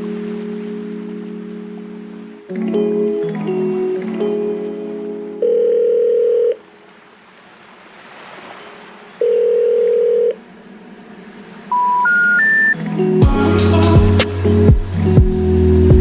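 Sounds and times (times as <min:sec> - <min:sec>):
telephone ringing tones: 0:05.4 - 0:06.7, 0:09.2 - 0:10.4
short rising telephone tones: 0:09.2 - 0:10.4, 0:11.7 - 0:12.8.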